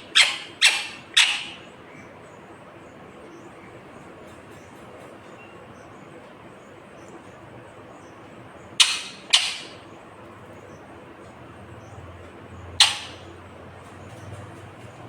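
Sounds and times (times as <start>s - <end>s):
parrot screeching: 0.0s - 1.7s, 8.8s - 9.8s, 12.8s - 13.2s.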